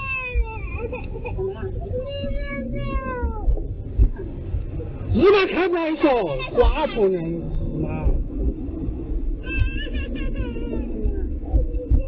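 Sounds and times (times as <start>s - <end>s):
low steady rumble: 0.0s - 12.0s
person crying out: 9.4s - 11.2s.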